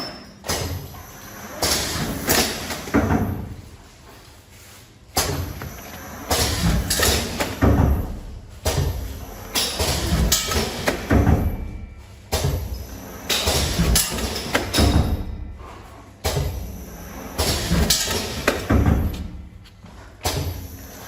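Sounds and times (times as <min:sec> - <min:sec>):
machine clunks and thuds: 0:00.0 - 0:03.7, 0:05.1 - 0:20.8
packaging machine running: 0:05.3 - 0:11.8.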